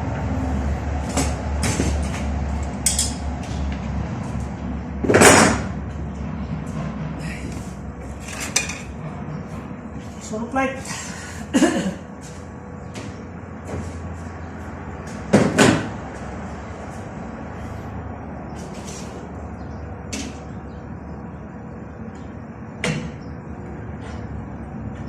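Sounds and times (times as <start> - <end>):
steady low rumble: 0.0 - 10.3.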